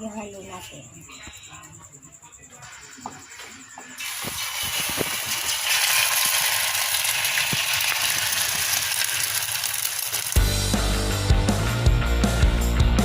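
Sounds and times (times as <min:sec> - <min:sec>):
food sizzling in hot oil: 0:04.0 - 0:10.5
music: 0:10.3 - 0:13.0.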